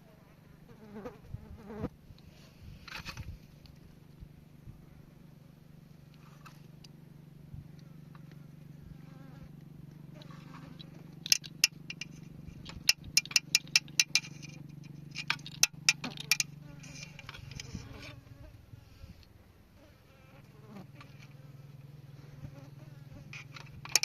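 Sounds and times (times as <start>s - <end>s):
sharp clicks and rattles: 10.8s - 18.1s, 23.3s - 24.0s.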